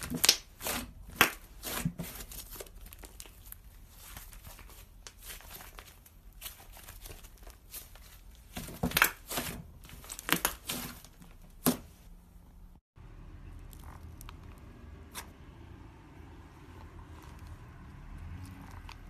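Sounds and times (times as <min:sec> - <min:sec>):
crinkling handling noises: 0:00.0 - 0:12.2.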